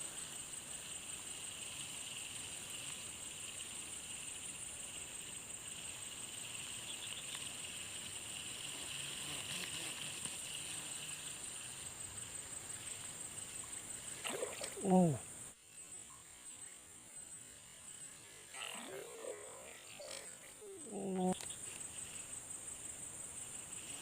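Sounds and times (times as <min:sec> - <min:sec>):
insects trilling: 0:00.0 - 0:24.0
faint ticks: 0:05.6 - 0:11.2, 0:21.2 - 0:22.3.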